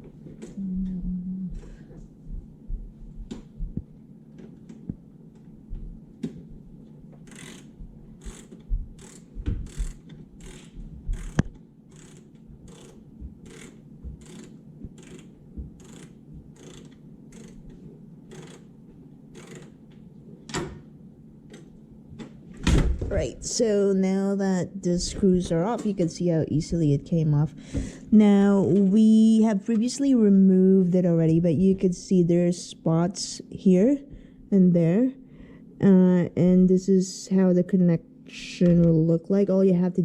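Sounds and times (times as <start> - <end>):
screwdriver clicking: 7.3 - 18.7, 19.3 - 19.8.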